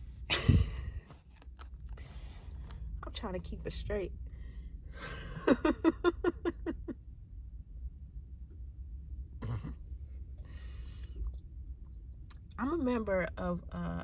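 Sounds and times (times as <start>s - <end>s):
low rumble: 0.0s - 14.0s
woman laughing: 0.3s - 1.2s, 5.0s - 7.0s.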